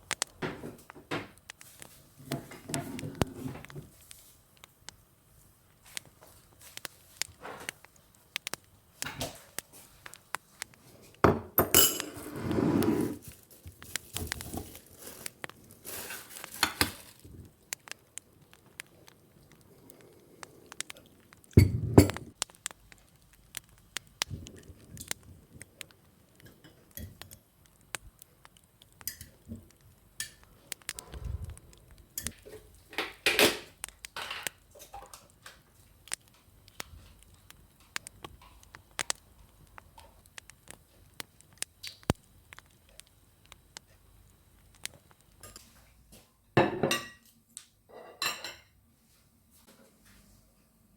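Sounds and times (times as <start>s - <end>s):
dishes and cutlery clinking: 11.3s - 13.1s, 47.9s - 48.8s.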